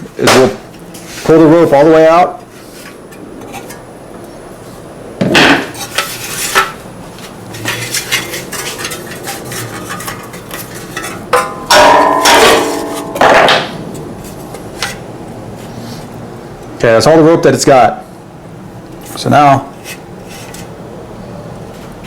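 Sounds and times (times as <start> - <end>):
metallic clattering: 5.3 - 15.1.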